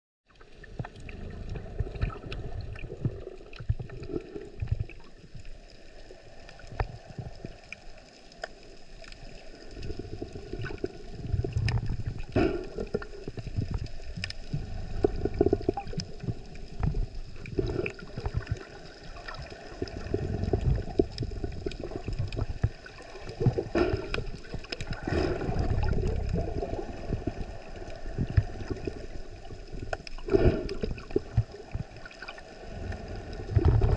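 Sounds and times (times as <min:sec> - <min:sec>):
water sloshing and gurgling: 0:00.3 - 0:33.9
low rumbling: 0:00.6 - 0:03.2, 0:19.7 - 0:33.9.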